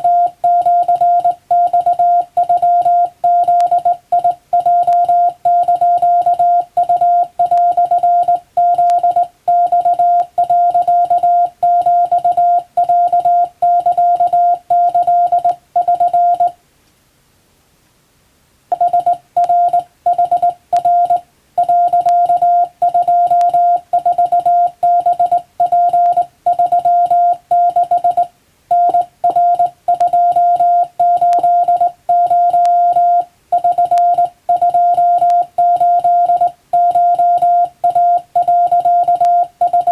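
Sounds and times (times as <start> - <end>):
morse code tone: 0.0 - 16.6, 18.7 - 39.9.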